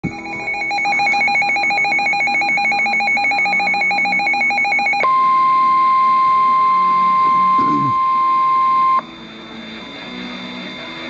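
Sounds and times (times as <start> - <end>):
steady alarm tone: 0.0 - 11.0
electronic tone warbling: 6.2 - 11.0.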